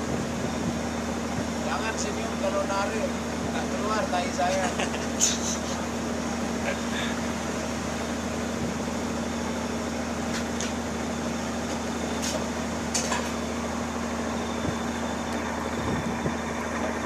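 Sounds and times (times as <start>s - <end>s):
boat engine humming: 0.0s - 17.0s.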